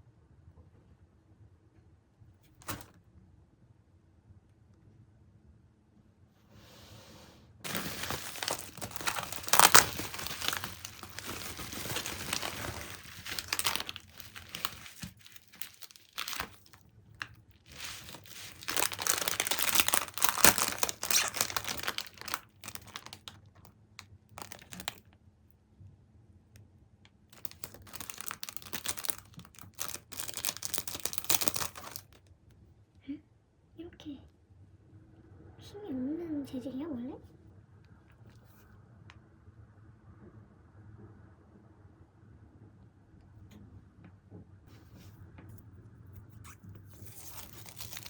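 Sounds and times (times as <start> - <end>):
wrapping material rustling: 7.6 - 23.3, 24.4 - 25.0, 27.4 - 32.2, 46.8 - 48.0.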